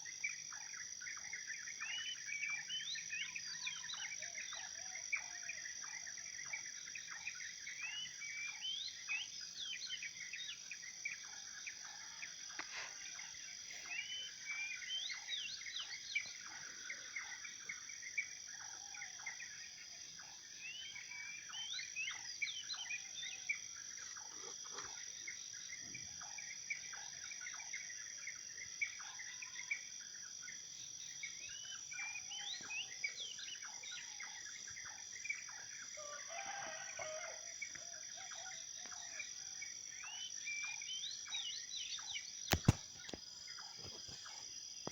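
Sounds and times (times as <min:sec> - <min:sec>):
birds chirping: 0:41.3 - 0:43.2.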